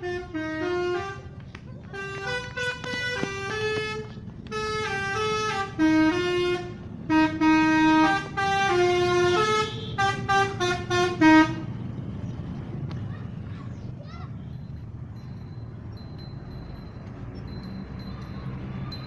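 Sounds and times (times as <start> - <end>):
bus musical horn playing tune: 0.0 - 11.8
low vehicle rumble: 0.0 - 19.0.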